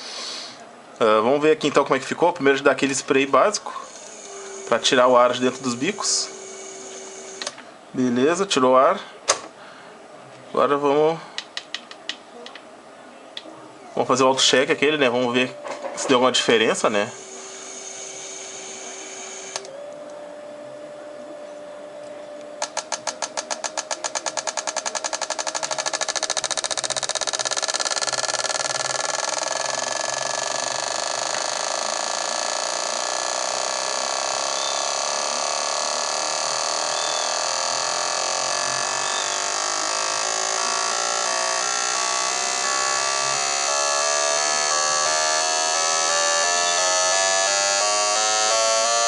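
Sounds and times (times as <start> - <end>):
test bench hum: 0.0 - 8.5, 13.4 - 49.0
fuel injectors clicking: 22.6 - 30.0.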